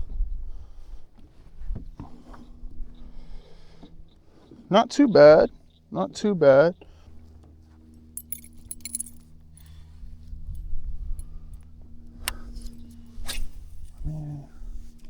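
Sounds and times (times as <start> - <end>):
low mechanical hum: 0.0 - 15.0
metallic jingling and clinking: 8.0 - 9.8.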